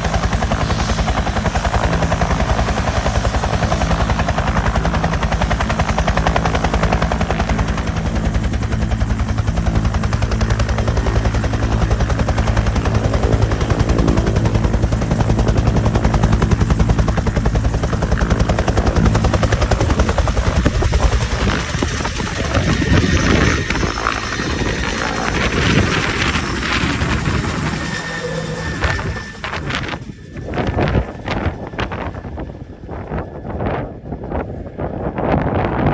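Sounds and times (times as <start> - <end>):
helicopter rotor beating: 0.0 - 35.9
high whine: 18.2 - 34.5.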